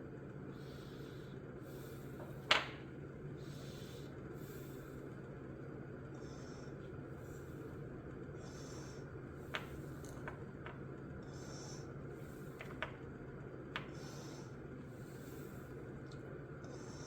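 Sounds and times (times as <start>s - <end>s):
steady low hum: 0.0s - 17.0s
soft breathing: 0.5s - 2.4s, 3.3s - 5.2s, 6.1s - 10.3s, 11.2s - 13.0s, 13.8s - 16.0s, 16.6s - 17.0s.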